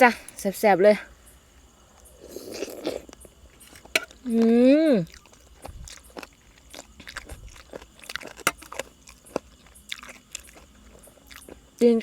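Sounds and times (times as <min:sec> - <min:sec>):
chewing and crunching food: 0:01.8 - 0:12.0.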